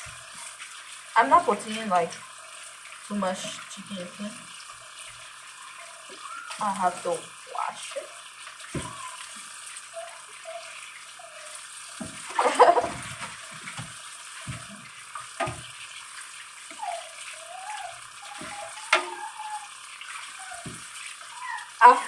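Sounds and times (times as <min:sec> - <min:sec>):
washing chicken by hand: 0:00.0 - 0:22.0
tap running into sink: 0:08.5 - 0:09.5, 0:11.9 - 0:16.9, 0:17.9 - 0:21.1.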